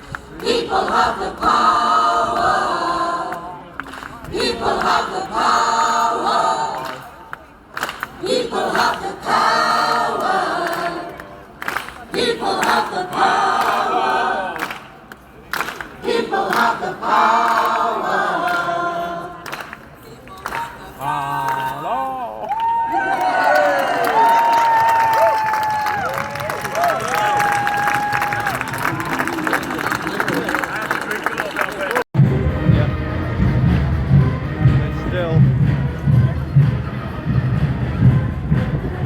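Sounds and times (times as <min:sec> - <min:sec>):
group of voices singing: 0:00.1 - 0:07.2, 0:08.2 - 0:11.3, 0:12.0 - 0:14.8, 0:16.0 - 0:19.8.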